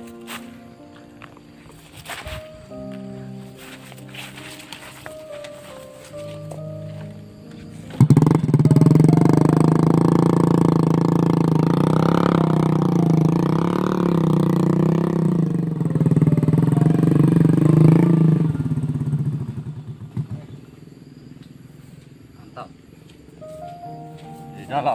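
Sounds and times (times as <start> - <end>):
small motorcycle engine revving: 7.8 - 20.8.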